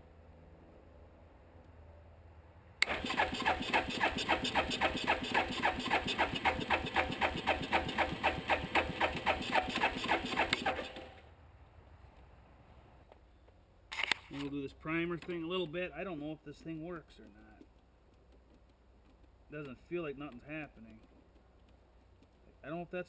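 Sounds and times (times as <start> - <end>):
electric starter cranking engine: 2.8 - 11.2.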